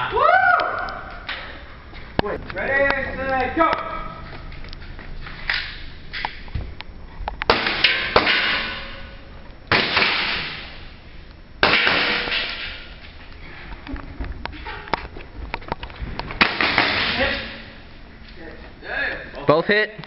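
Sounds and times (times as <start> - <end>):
loud ringing gun bangs: 7.5 - 10.7, 11.6 - 12.8, 16.4 - 17.6.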